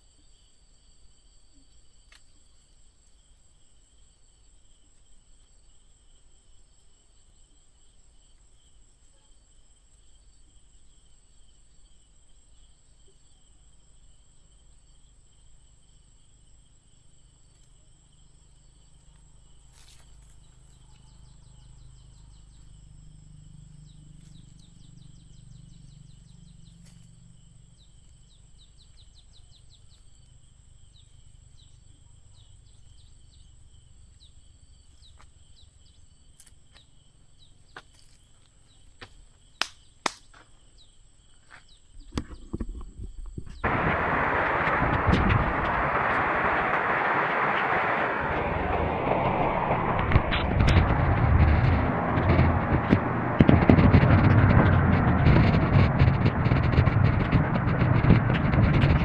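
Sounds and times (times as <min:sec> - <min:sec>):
insects chirring: 0:00.0 - 0:59.0
sharp clicks: 0:39.6 - 0:40.3
loud steady rushing noise: 0:43.6 - 0:59.0.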